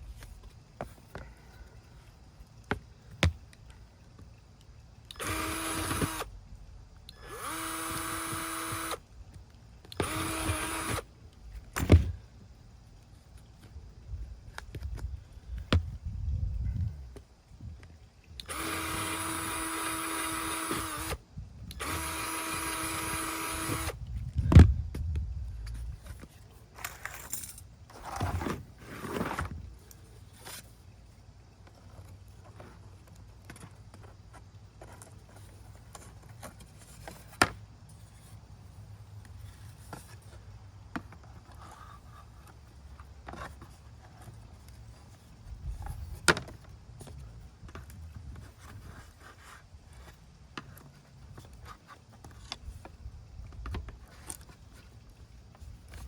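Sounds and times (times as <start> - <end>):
power drill running: 5.1 - 6.3, 7.1 - 9.0, 10.0 - 11.0, 18.4 - 24.0
handling noises: 24.1 - 30.9.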